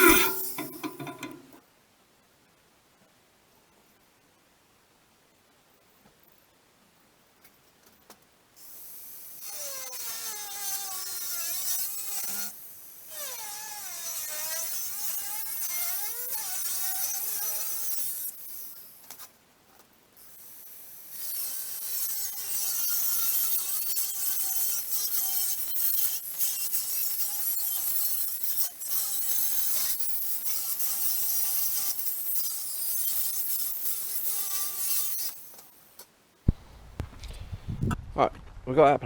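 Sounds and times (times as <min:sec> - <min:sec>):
angle grinder cutting steel: 0:00.0 - 0:01.6, 0:21.1 - 0:35.5.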